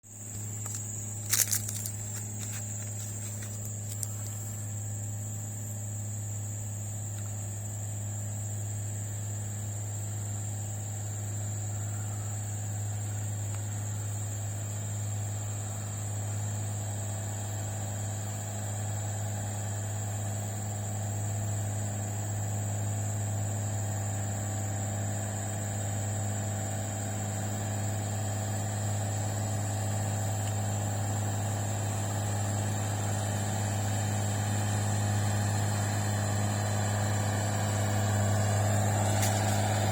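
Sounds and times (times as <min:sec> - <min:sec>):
diesel truck engine climbing: 0:27.4 - 0:39.9.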